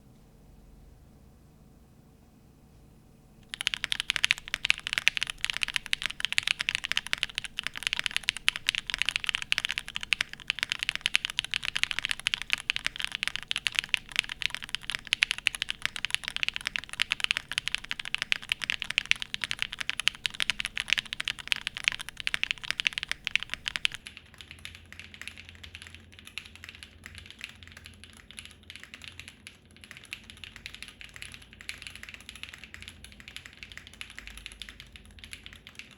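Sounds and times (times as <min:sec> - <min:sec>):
faint hum: 0:00.0 - 0:24.0
fast typing on mechanical keyboard: 0:03.4 - 0:24.0, 0:25.2 - 0:35.9.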